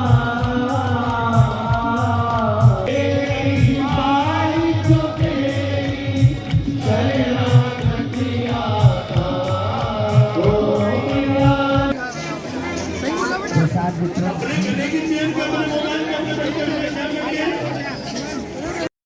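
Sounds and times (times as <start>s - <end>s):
person chanting devotional song: 0.0s - 12.0s
steady drum beat: 0.0s - 12.0s.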